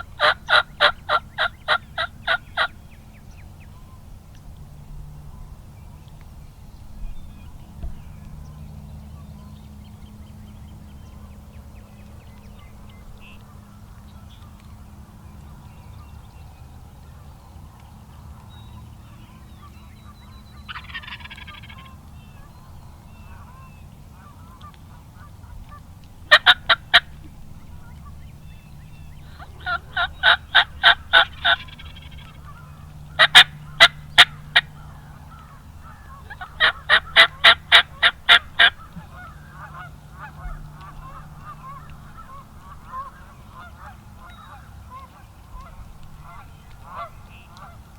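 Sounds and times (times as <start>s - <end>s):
turkey call yelping: 0.0s - 2.8s, 20.7s - 22.0s, 26.3s - 27.3s, 29.2s - 47.8s.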